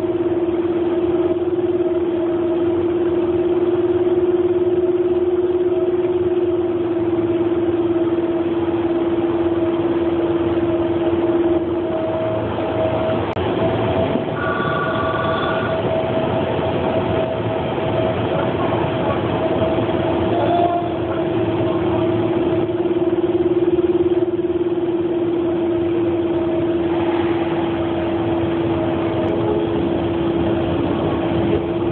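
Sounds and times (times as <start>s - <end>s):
steady electric hum: 0.0s - 31.9s
train carriage running noise: 0.0s - 31.9s
high electronic tone: 14.4s - 16.4s.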